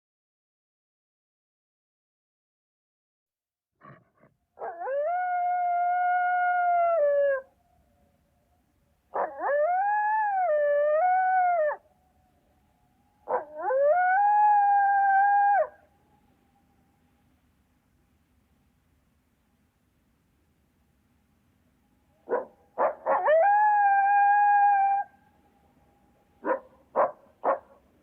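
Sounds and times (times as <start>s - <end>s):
dog howling: 4.6s - 7.5s, 9.1s - 11.8s, 13.2s - 15.9s, 22.2s - 25.2s
dog yelping: 22.3s - 23.4s, 26.4s - 27.8s.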